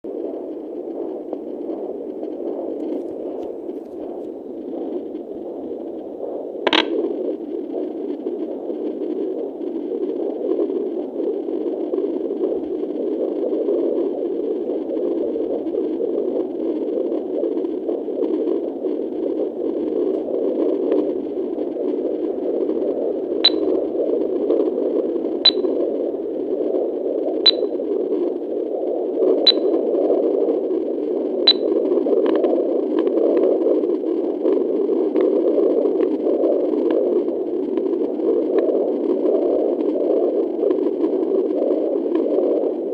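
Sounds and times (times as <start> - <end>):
whooshing heartbeat through doppler: 0.0 - 42.9
sharp high clicks: 6.6 - 7.0, 23.4 - 23.7, 25.5 - 25.8, 27.5 - 27.7, 29.5 - 29.8, 31.5 - 31.8.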